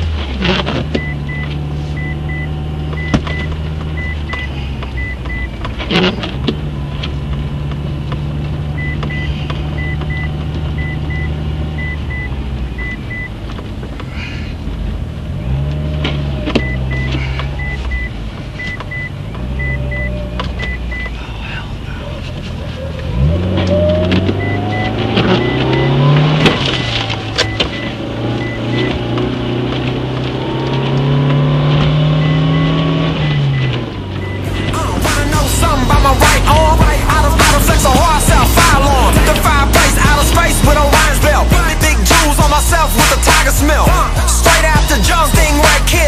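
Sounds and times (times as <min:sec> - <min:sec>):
car engine running: 0:00.0 - 0:46.0
high beeps in pairs: 0:01.0 - 0:05.5, 0:08.8 - 0:13.3, 0:16.6 - 0:21.1, 0:24.4 - 0:26.1, 0:26.8 - 0:29.0, 0:32.2 - 0:32.8, 0:34.2 - 0:34.8.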